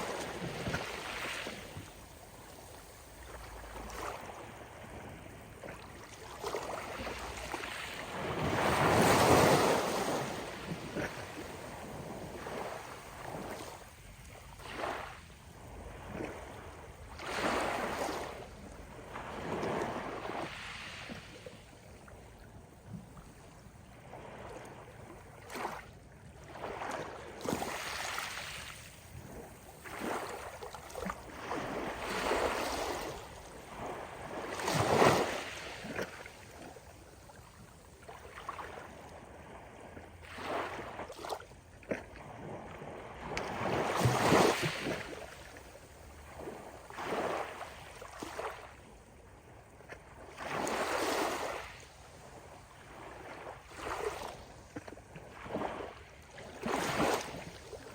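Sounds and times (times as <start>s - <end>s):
ocean waves breaking on beach: 0.0s - 21.6s, 26.6s - 36.8s, 42.2s - 48.8s, 50.2s - 54.5s, 55.3s - 57.9s.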